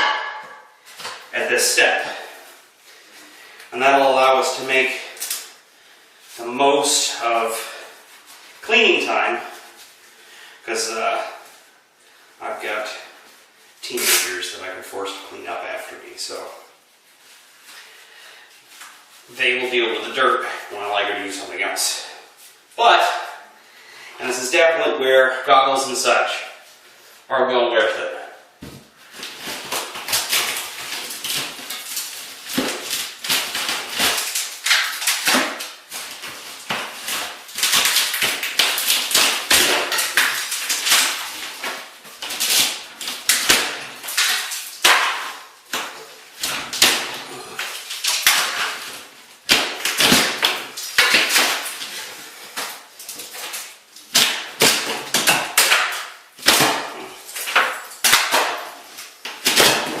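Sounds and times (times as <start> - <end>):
ceiling knocks and crashes: 0.0 - 2.3, 28.6 - 60.0
insulation and debris falling: 28.6 - 60.0.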